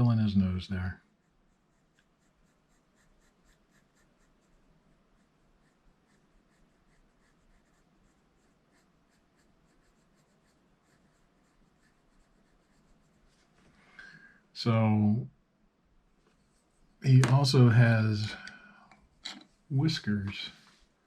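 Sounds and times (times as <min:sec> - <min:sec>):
pencil scribbling on paper: 0:01.1 - 0:13.5.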